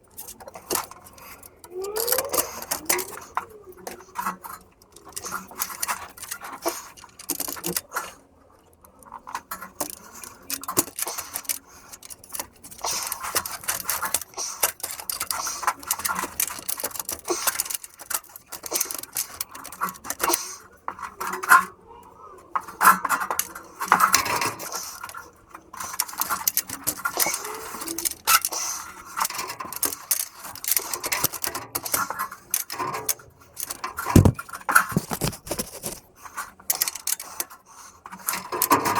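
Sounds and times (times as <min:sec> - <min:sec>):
metal tools clinking and scraping: 0:25.8 - 0:36.0.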